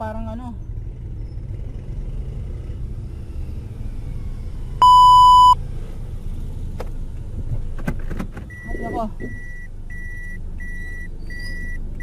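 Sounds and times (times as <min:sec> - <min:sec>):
car road and engine rumble: 0:00.0 - 0:12.0
electronic beep: 0:04.8 - 0:05.6.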